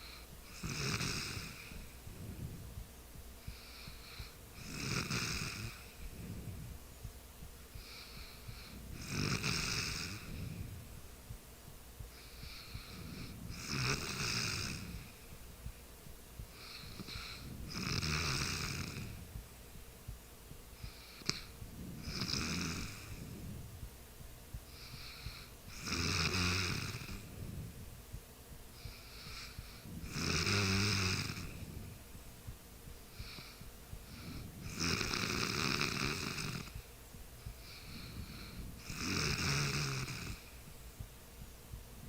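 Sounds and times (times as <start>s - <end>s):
person snoring: 0.0s - 2.5s, 3.5s - 6.6s, 7.8s - 10.7s, 12.1s - 15.2s, 16.6s - 19.2s, 20.8s - 23.5s, 24.7s - 27.6s, 28.8s - 32.0s, 33.2s - 36.8s, 37.6s - 40.5s
soft breathing: 0.0s - 41.9s.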